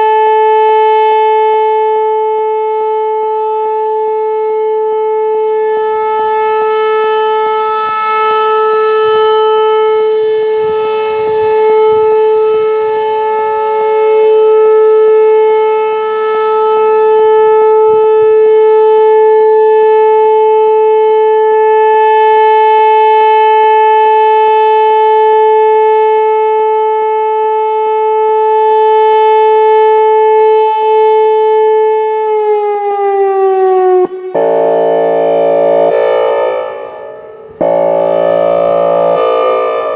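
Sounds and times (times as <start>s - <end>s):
electronic warning siren: 0.0s - 39.9s.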